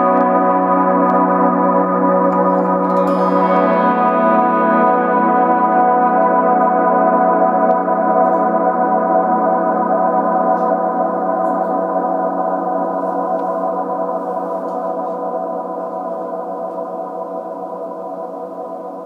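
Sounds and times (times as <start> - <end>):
electric guitar chord with reverb: 0.0 - 14.6.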